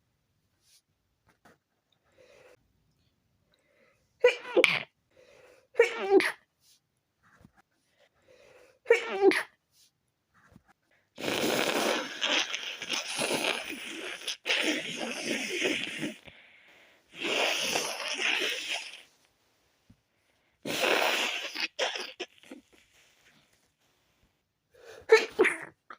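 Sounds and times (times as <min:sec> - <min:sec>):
muffled sneezes: 0:04.2 - 0:04.9, 0:05.8 - 0:06.5, 0:08.9 - 0:09.6, 0:11.2 - 0:16.2, 0:17.1 - 0:19.1, 0:20.7 - 0:22.8, 0:25.0 - 0:25.8.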